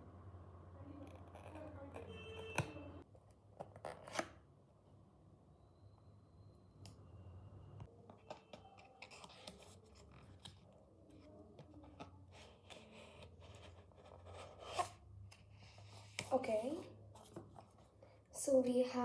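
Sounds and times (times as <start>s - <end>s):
cardboard scrape: 12.3s - 17.9s.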